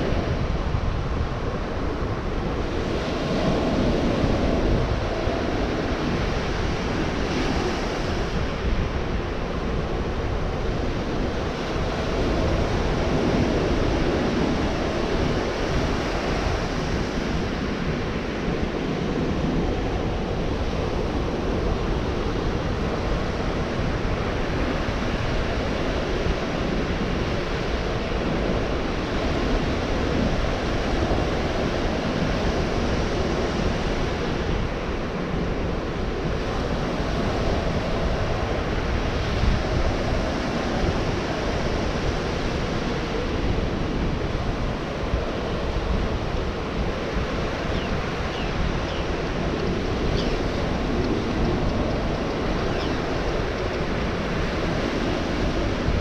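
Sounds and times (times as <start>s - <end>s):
waves breaking on beach: 0.0s - 56.0s
wind noise on microphone: 0.0s - 56.0s.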